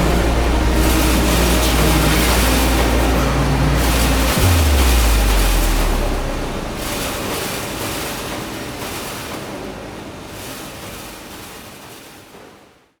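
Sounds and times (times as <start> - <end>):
rushing noise ambience: 0.0 - 8.4.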